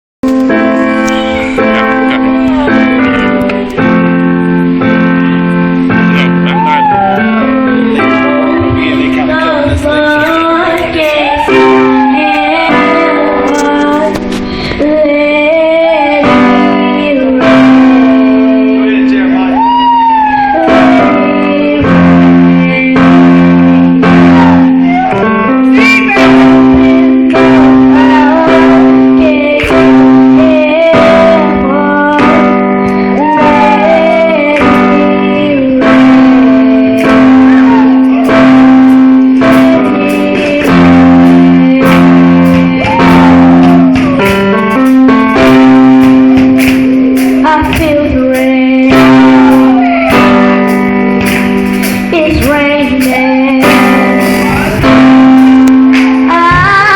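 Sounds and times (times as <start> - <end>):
held chords: 0.2 - 56.9
person singing melody: 0.2 - 56.9
steady drum beat: 36.1 - 56.9.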